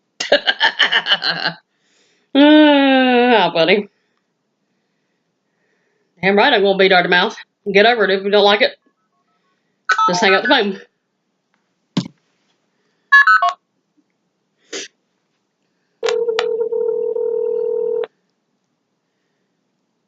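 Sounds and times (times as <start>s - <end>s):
dialing tones: 13.1s - 13.6s, 16.0s - 18.1s
telephone line click: 16.0s - 18.1s
telephone ringback tone: 16.0s - 18.1s.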